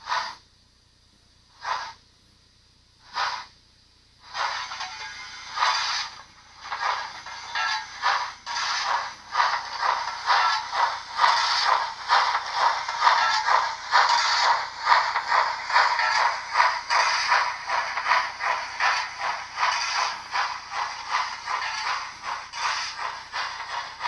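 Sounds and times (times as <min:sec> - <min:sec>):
model steam locomotive chuffs: 0:00.0 - 0:00.4, 0:01.5 - 0:02.0, 0:03.0 - 0:03.6, 0:04.2 - 0:24.0.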